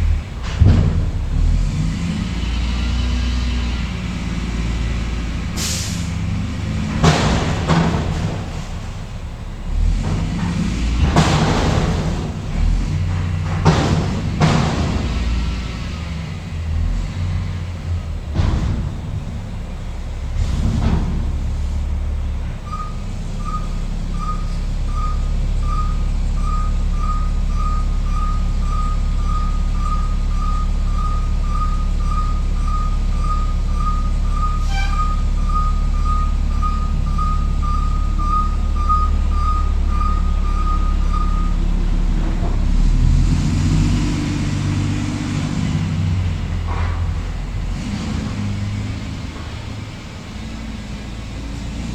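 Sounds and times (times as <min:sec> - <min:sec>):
garbage truck diesel engine running: 0:00.0 - 0:51.9
reversing beeper: 0:22.6 - 0:42.0.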